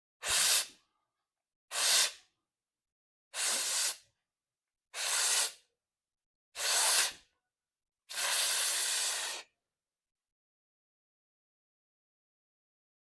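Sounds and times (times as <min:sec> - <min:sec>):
breath rushing through open mouth: 0:00.2 - 0:00.7, 0:01.7 - 0:02.2, 0:03.4 - 0:04.1, 0:05.0 - 0:05.6, 0:06.6 - 0:07.2, 0:08.1 - 0:09.5.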